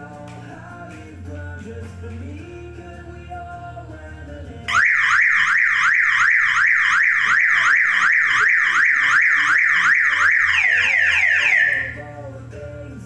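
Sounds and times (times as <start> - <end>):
car alarm siren whooping: 4.7 - 12.0.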